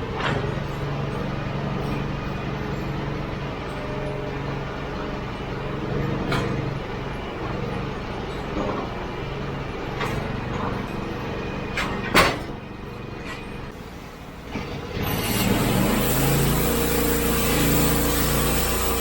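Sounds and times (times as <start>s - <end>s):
sharp knocks and clanks: 10.0s - 12.6s
sawmill engine running: 14.3s - 19.0s.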